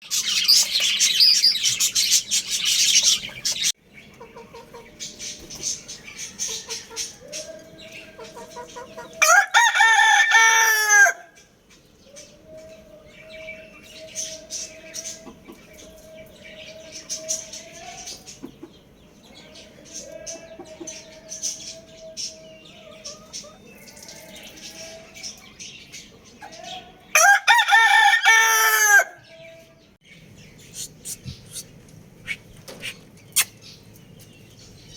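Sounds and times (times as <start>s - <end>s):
small birds chirping: 0.0s - 9.2s, 11.4s - 27.1s, 29.2s - 34.9s
rooster crowing: 9.0s - 11.4s, 27.1s - 29.7s.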